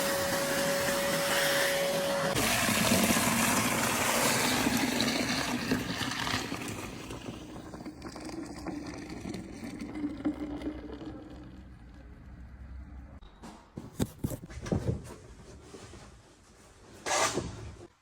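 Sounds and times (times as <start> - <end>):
suction cleaning machine running: 0.0 - 12.2.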